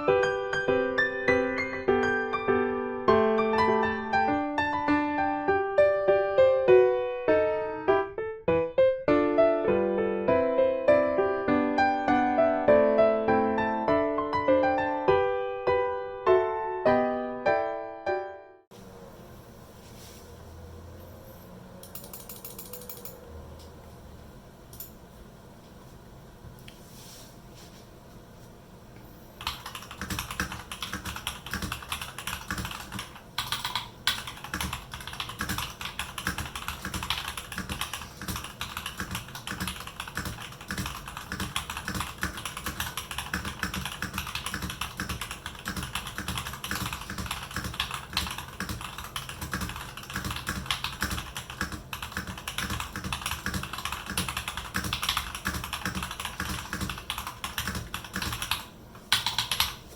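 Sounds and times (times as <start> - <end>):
mechanical keyboard typing: 21.9 - 23.2, 29.4 - 59.8.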